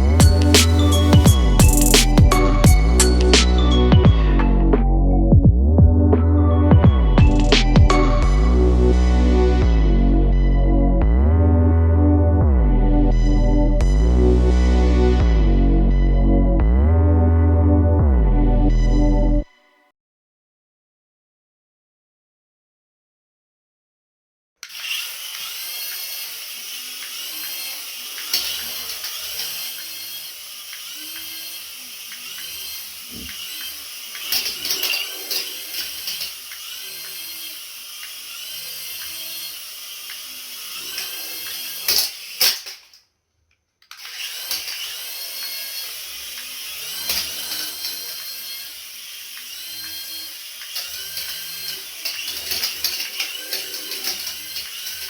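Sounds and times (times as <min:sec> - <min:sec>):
toy motor whirring: 0:00.0 - 0:04.5, 0:07.2 - 0:09.6, 0:24.6 - 0:55.0.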